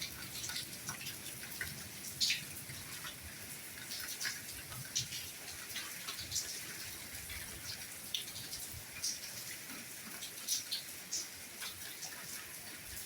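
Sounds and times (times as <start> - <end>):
soft rain hiss: 0.0 - 13.0.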